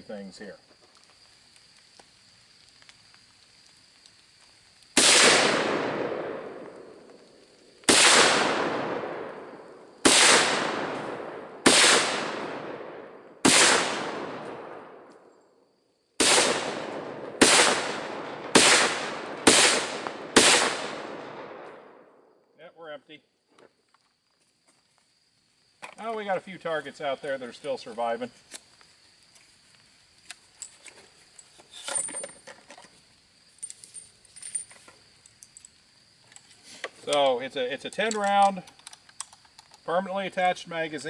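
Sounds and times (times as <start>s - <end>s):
rifle shots with echo: 5.0s - 6.9s, 7.9s - 15.1s, 16.2s - 22.0s.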